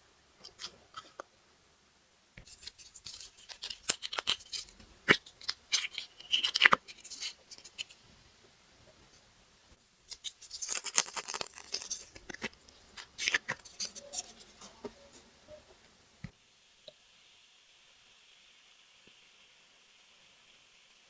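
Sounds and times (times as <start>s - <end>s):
plastic packaging crinkling: 2.5s - 8.0s, 10.1s - 14.7s.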